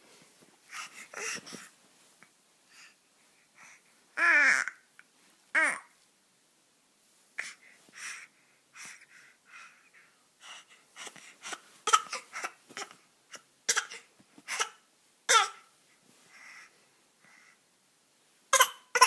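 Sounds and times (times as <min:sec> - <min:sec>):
baby fake coughing: 0:11.9 - 0:15.7, 0:18.5 - 0:19.0.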